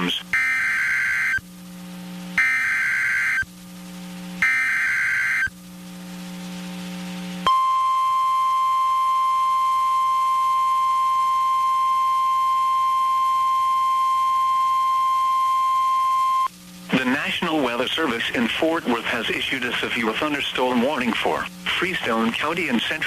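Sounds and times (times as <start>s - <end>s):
steady warning alarm tone: 0.0s - 1.5s, 2.4s - 3.5s, 4.4s - 5.6s, 7.4s - 16.5s
warbling two-tone digital data burst: 4.4s - 5.5s.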